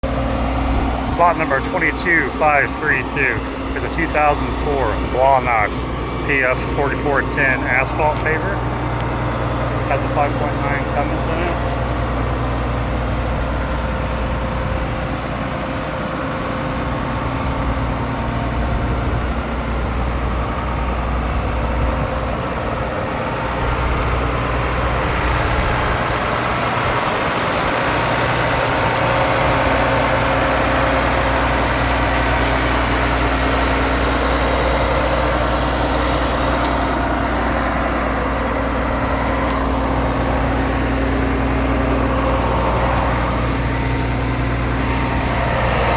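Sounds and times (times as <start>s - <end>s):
diesel engine idling: 0.0s - 45.9s.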